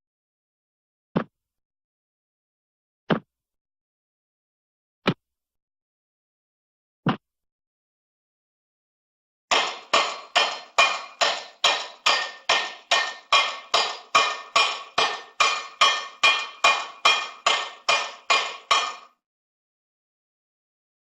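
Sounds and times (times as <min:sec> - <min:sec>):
cartoon hammering with short ring: 0:09.5 - 0:19.1.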